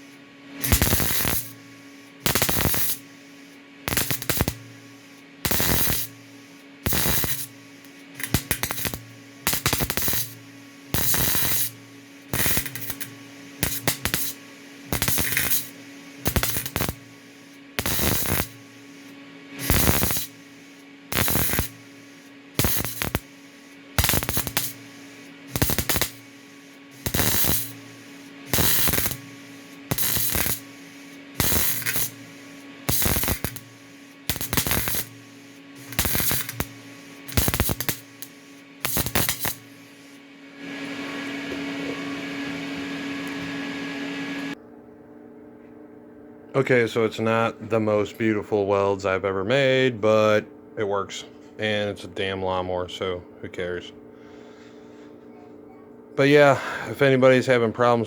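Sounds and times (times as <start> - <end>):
welder crackling: 0.0 - 44.6
welder hum: 0.0 - 44.6.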